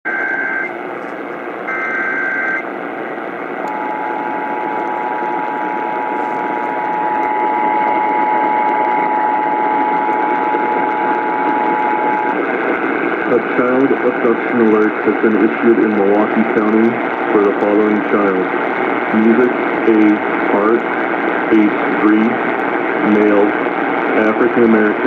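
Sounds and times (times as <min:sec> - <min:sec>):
data burst of alternating tones: 0:00.0 - 0:02.7, 0:03.5 - 0:07.9
two-tone attention signal: 0:00.0 - 0:02.7, 0:03.7 - 0:12.3
radio static hiss: 0:00.0 - 0:08.8, 0:09.6 - 0:25.0.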